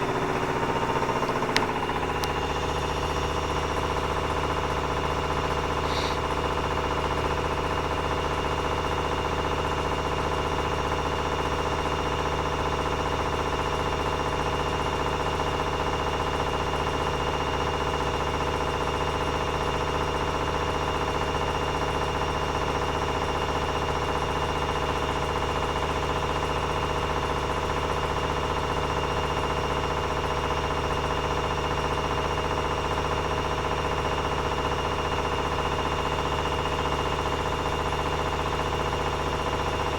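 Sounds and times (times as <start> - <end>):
washing machine spinning: 0.0 - 14.2.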